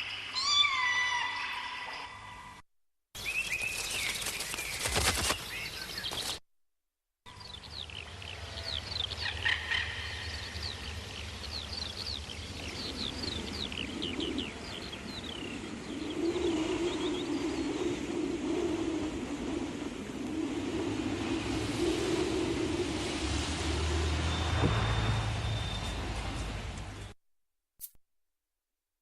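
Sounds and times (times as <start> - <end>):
birds chirping: 3.2 - 6.4, 7.3 - 18.0.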